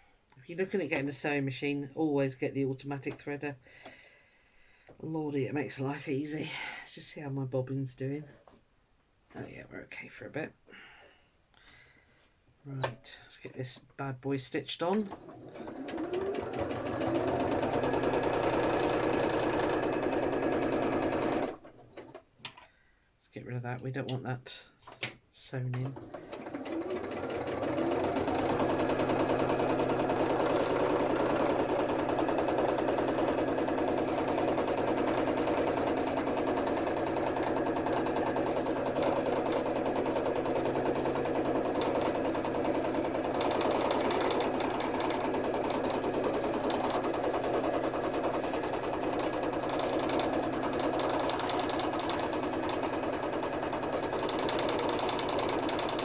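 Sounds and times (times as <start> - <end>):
electric sewing machine stitching: 14.9 - 22.2, 25.9 - 56.0.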